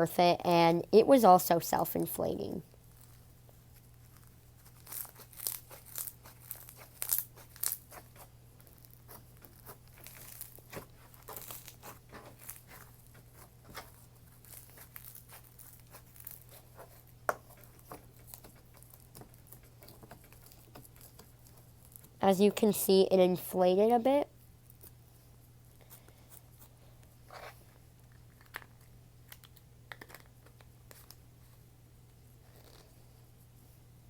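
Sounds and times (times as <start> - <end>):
crunchy slime crackling: 2.8 - 22.2.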